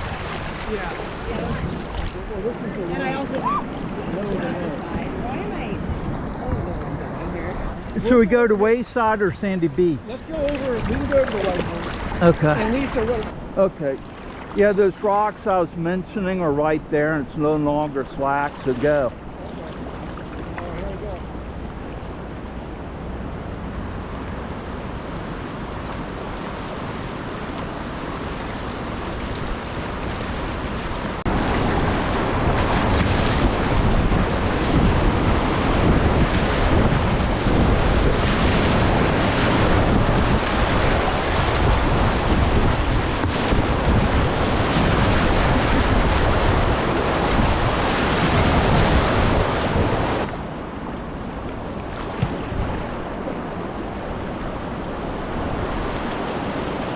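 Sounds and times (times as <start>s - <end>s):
rushing whitewater: 0.0s - 56.9s
wind buffeting microphone: 0.0s - 56.9s.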